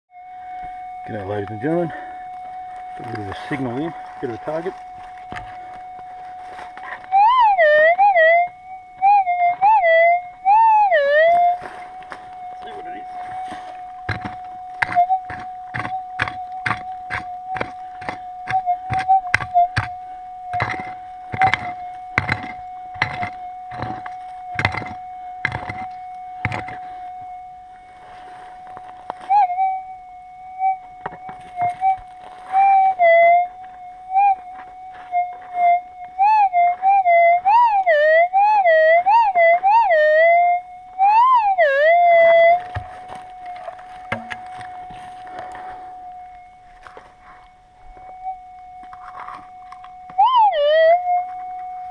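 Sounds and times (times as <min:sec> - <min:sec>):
metal detector humming: 0:00.1 - 0:51.9
scraping: 0:11.2 - 0:29.5
digging strikes into ground: 0:13.4 - 0:26.9
sharp knocks: 0:20.6 - 0:26.8.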